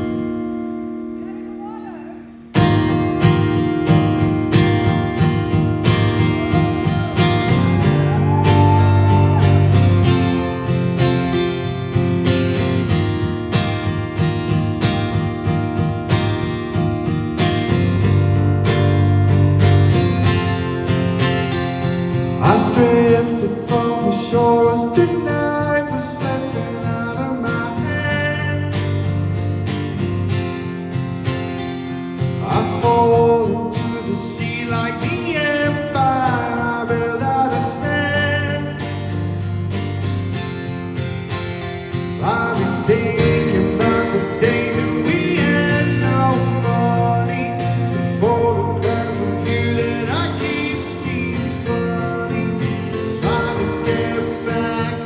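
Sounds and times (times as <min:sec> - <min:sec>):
acoustic guitar strumming: 0:00.0 - 0:55.0
man singing: 0:05.9 - 0:10.4, 0:22.3 - 0:29.1, 0:32.4 - 0:39.2, 0:42.1 - 0:55.0.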